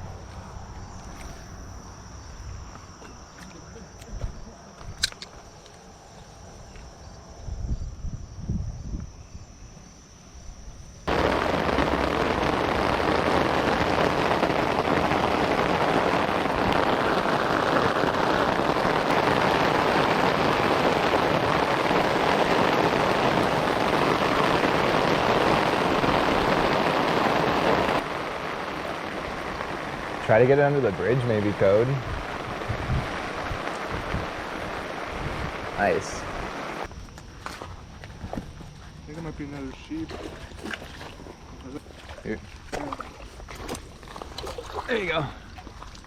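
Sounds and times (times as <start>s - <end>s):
faint insect chirring: 0.0s - 45.7s
sharp click: 5.0s - 5.3s
heavy rain pouring: 11.1s - 36.9s
low rumbles: 11.1s - 37.0s.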